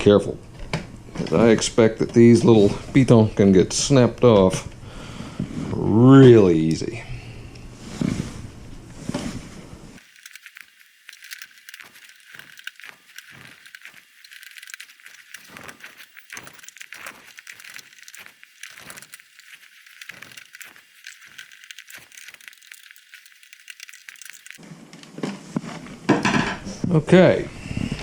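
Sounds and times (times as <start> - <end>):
plastic parts clicking and rattling: 10.0 - 24.6.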